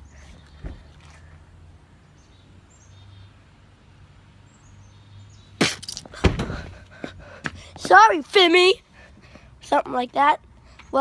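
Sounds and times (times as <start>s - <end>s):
sharp crack: 5.6s - 6.5s
heavy thump: 5.7s - 6.8s.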